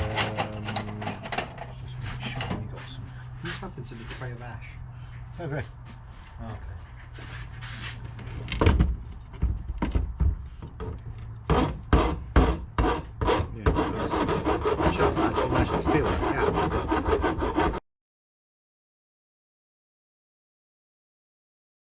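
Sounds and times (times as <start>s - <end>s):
knocks and clatters: 0.0s - 2.7s, 8.1s - 11.7s.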